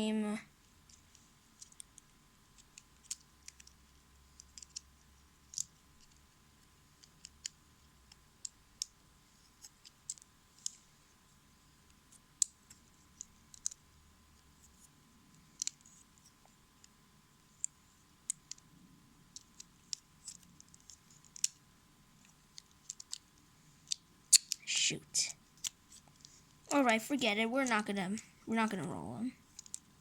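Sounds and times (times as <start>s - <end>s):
plastic toy parts clicking: 0.8s - 6.2s, 7.0s - 9.0s, 9.6s - 10.8s, 12.3s - 13.8s, 15.5s - 17.0s, 17.6s - 18.6s, 19.3s - 21.6s, 22.2s - 24.7s, 29.5s - 29.9s.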